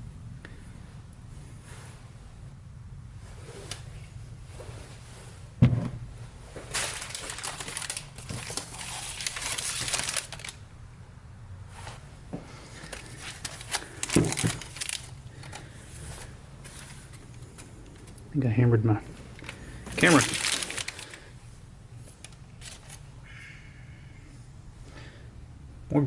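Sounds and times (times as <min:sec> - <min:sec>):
crinkling and rustling: 0:03.2 - 0:10.6, 0:11.7 - 0:18.3, 0:19.1 - 0:21.4, 0:22.0 - 0:23.1.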